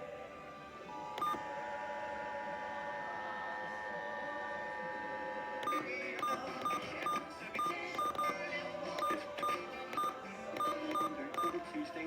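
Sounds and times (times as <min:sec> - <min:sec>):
short electronic beeps with clicks: 0:01.2 - 0:01.4, 0:05.6 - 0:08.4, 0:09.0 - 0:11.6.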